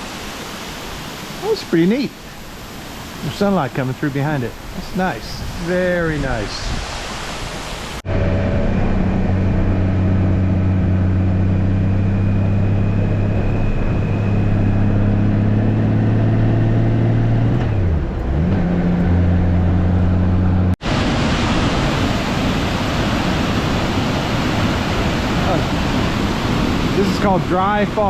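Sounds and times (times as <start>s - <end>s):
waterfall rushing: 0.0s - 8.1s, 20.8s - 28.0s
motorcycle engine cruising: 8.0s - 20.8s.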